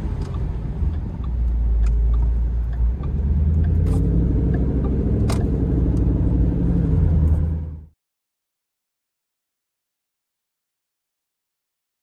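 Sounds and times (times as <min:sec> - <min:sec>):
car engine running: 0:00.0 - 0:07.9.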